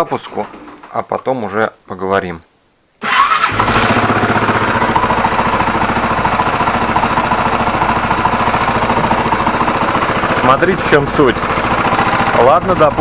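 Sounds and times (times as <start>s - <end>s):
motorcycle engine running: 3.4s - 13.0s.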